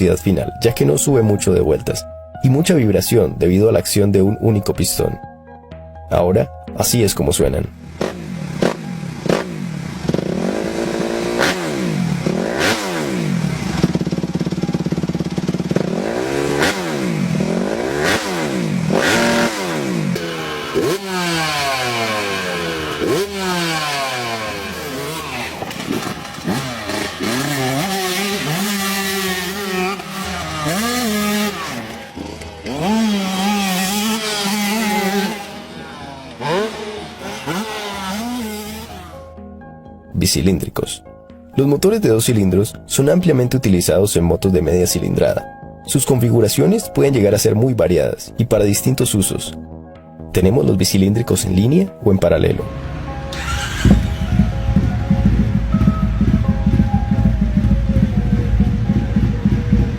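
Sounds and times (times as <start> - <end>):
motorcycle engines revving: 7.8 - 39.2, 52.6 - 59.9.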